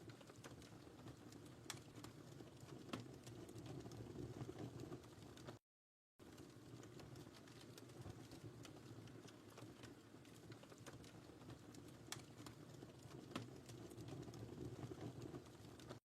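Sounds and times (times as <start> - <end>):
low rumble of flames: 0.0 - 5.6, 6.2 - 16.0
wood fire crackling: 0.0 - 5.6, 6.2 - 16.0.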